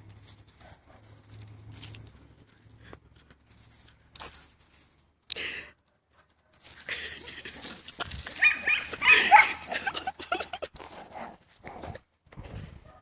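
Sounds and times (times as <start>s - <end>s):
dogs fighting and scuffling: 6.1s - 12.1s
dogs high-pitched cries: 8.3s - 9.7s.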